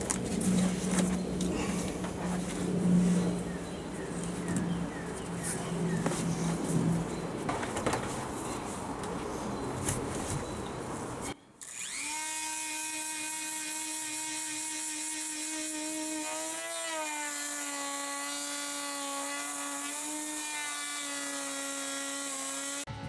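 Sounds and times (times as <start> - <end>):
rotary tool high whine: 0.0 - 18.3.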